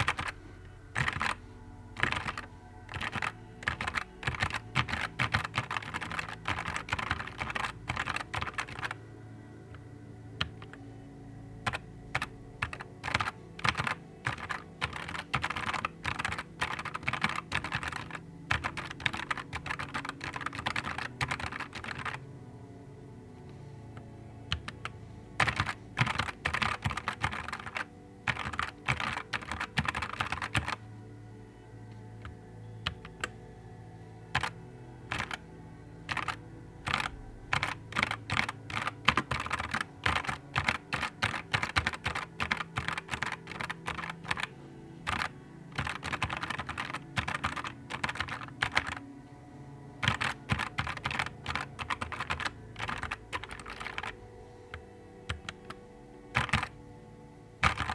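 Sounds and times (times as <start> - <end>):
mechanical keyboard key clicks: 50.0 - 54.2, 56.4 - 56.8, 57.6 - 57.9.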